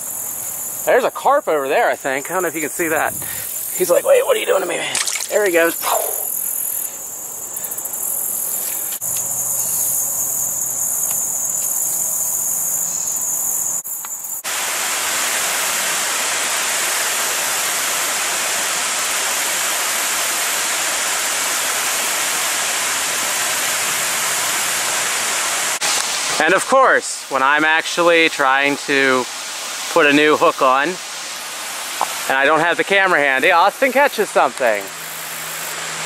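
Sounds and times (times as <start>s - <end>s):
insects trilling: 0.0s - 14.5s, 27.7s - 36.0s
river water rushing: 2.4s - 6.5s, 14.5s - 27.6s, 28.2s - 36.0s.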